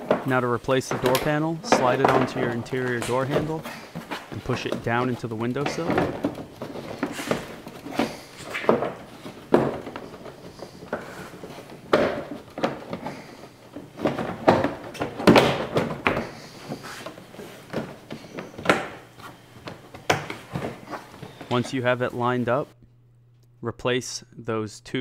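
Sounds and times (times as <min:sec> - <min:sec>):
plastic panel thumps and clunks: 0:00.0 - 0:19.0
rustling handling: 0:00.0 - 0:23.5.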